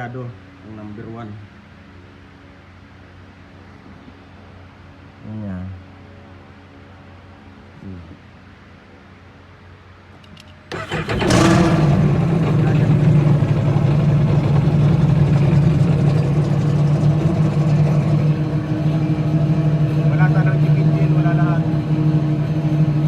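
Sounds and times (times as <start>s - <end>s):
misfiring engine running: 10.7s - 23.0s.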